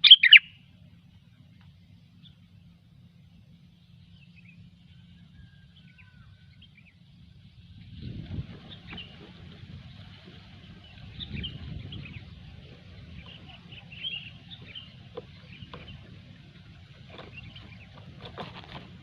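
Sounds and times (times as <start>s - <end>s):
bulbul chattering chirps: 0.0s - 0.6s
steady low rumble: 0.0s - 19.0s.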